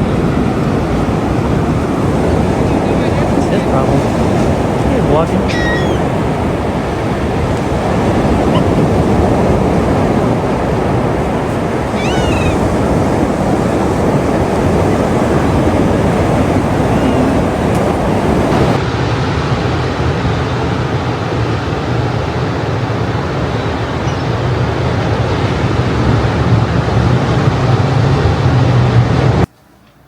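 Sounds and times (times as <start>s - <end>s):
ocean surf: 0.0s - 29.5s
wind: 0.0s - 30.0s
gull calls: 5.0s - 7.2s, 7.8s - 9.5s, 11.7s - 13.2s, 16.4s - 17.7s.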